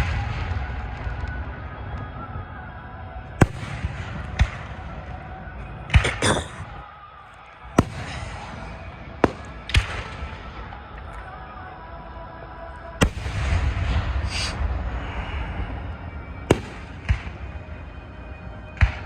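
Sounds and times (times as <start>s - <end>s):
fireworks bursting: 7.8s - 10.4s, 16.5s - 17.4s.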